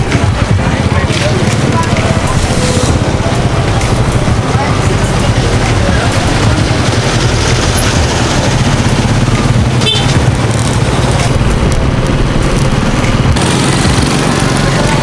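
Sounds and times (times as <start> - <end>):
street noise: 0.0 - 15.0
vehicle engine running: 0.0 - 15.0.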